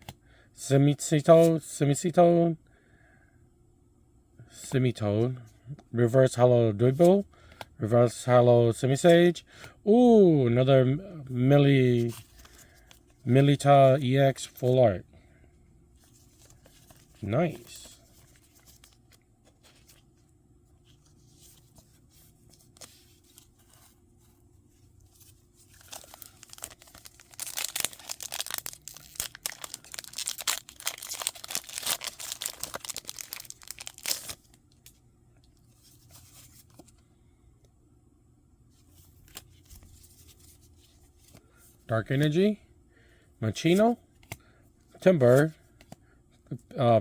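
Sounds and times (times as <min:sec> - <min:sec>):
card handling: 0:11.6 - 0:14.8, 0:16.0 - 0:37.0, 0:38.8 - 0:41.8
foil wrapper tearing and crinkling: 0:25.7 - 0:34.6.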